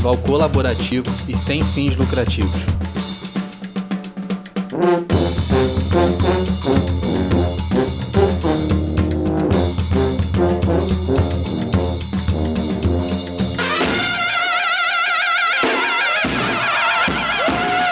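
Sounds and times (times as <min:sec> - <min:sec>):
drum kit: 0:00.0 - 0:14.6, 0:15.6 - 0:17.9
brass horns: 0:04.5 - 0:17.9.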